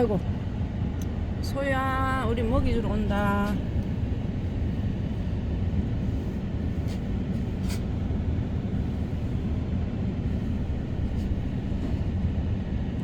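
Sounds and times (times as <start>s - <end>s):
car engine and road rumble: 0.0s - 13.0s.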